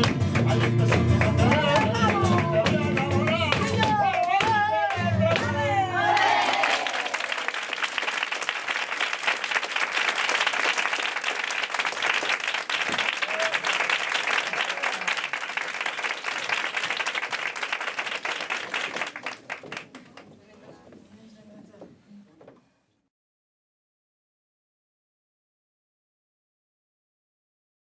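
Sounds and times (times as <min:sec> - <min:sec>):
audience applauding: 0:06.0 - 0:20.2.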